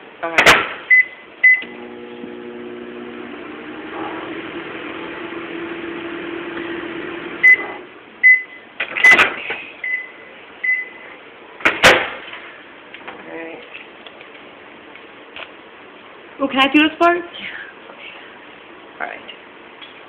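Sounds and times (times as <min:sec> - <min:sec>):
microwave timer beeps: 0:00.9 - 0:02.0, 0:07.4 - 0:09.2, 0:09.8 - 0:11.0
microwave oven humming: 0:01.0 - 0:08.8
sharp clunk: 0:11.6 - 0:12.3.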